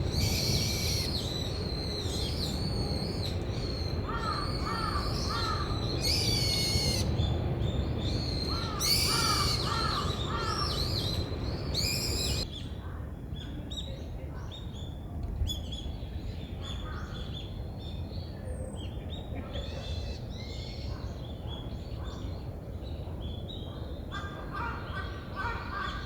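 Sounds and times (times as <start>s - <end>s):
loud harsh bird calls: 0.0s - 7.4s, 8.0s - 12.5s, 24.1s - 26.0s.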